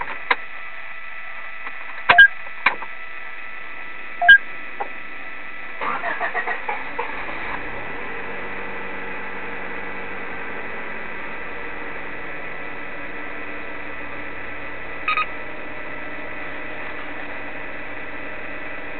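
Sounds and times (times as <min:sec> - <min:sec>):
short double beep: 0:02.1 - 0:02.3, 0:04.2 - 0:04.4
car engine idling: 0:05.8 - 0:18.9.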